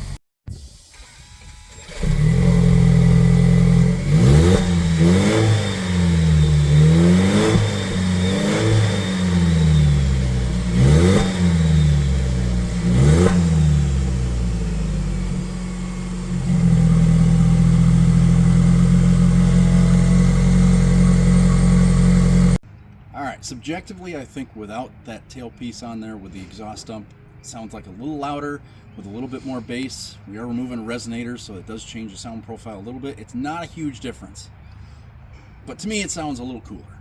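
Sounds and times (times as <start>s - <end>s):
truck engine idling and revving: 0.0s - 0.2s, 1.2s - 22.6s.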